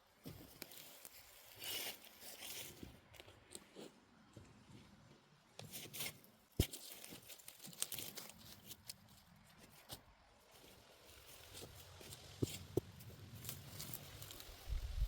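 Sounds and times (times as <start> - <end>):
weeds tearing and rustling: 6.6 - 9.2, 11.0 - 15.0.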